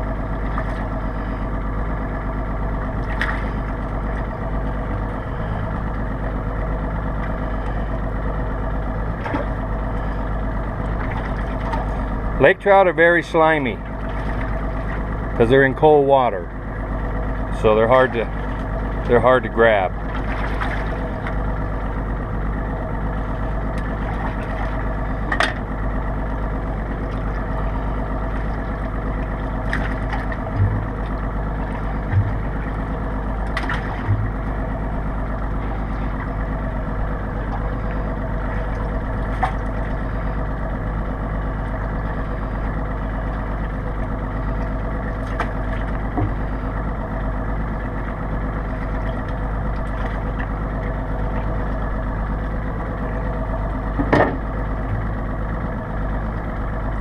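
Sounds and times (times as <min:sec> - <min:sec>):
boat motor idling: 0:00.0 - 0:57.0
low knocks: 0:30.2 - 0:34.6.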